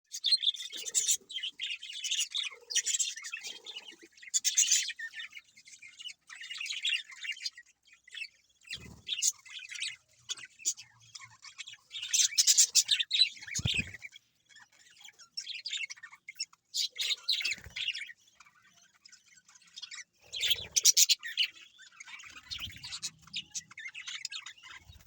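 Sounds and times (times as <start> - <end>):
budgerigars chirping: 0.1 - 25.0.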